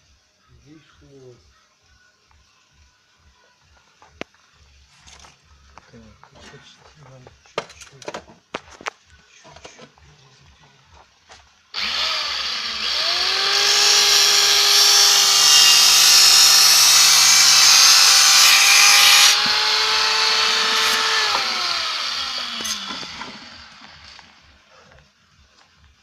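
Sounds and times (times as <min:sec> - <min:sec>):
angle grinder cutting sheet metal: 0:11.8 - 0:24.5.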